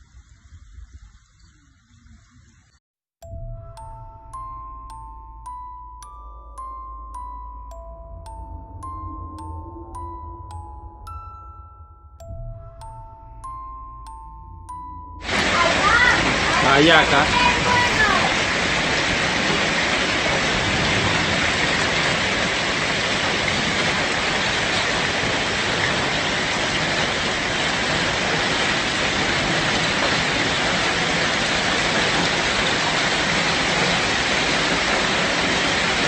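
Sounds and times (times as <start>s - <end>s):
heavy rain: 15.2s - 36.0s.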